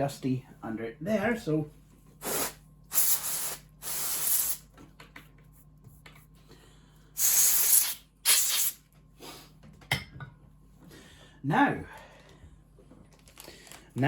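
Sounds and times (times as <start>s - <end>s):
compressed air hissing: 2.2s - 4.7s, 7.2s - 8.8s.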